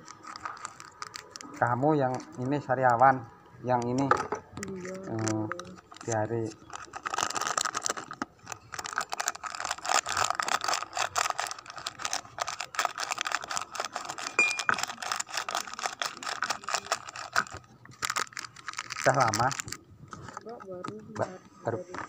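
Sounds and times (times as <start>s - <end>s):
glasses and bottles clinking: 14.3s - 14.8s.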